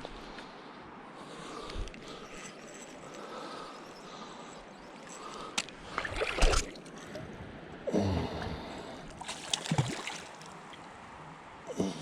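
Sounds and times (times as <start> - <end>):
stream running: 5.1 - 7.5, 8.4 - 11.5
fish splashing in water: 9.2 - 10.5.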